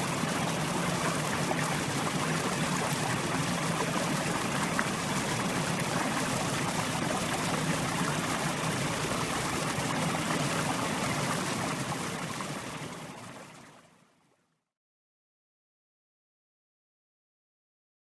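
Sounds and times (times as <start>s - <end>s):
river flowing over rocks: 0.0s - 13.6s.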